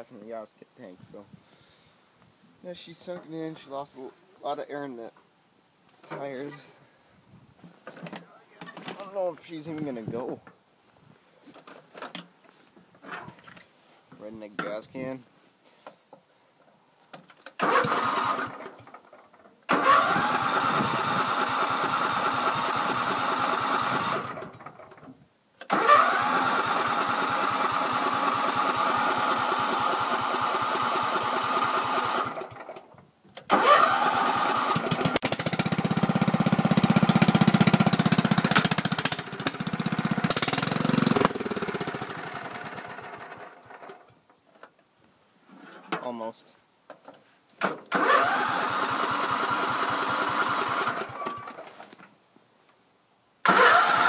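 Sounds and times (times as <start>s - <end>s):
tractor engine cranking: 17.3s - 44.2s, 47.6s - 51.8s, 53.4s - 54.0s
engine sputtering and running: 33.9s - 43.4s.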